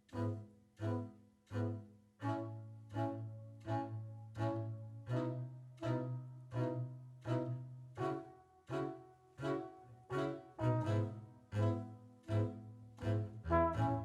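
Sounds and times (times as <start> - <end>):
double bass plucked: 10.7 - 14.0.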